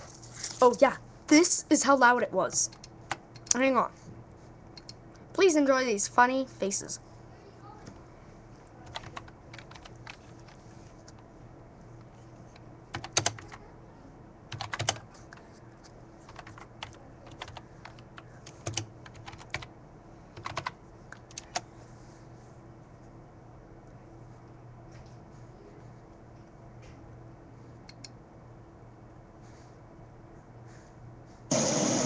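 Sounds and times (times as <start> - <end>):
faint low hum: 0.0 - 32.0
keyboard keys clicking: 8.9 - 11.2, 12.9 - 13.6, 14.5 - 15.4, 16.2 - 19.7, 20.4 - 21.6.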